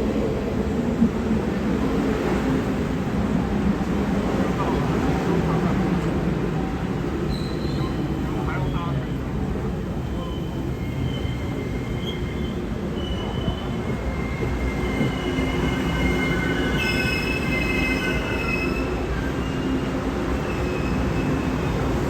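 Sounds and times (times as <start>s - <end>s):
train low rumble: 0.0s - 22.0s
train wheels squealing: 7.2s - 9.3s, 9.9s - 22.0s.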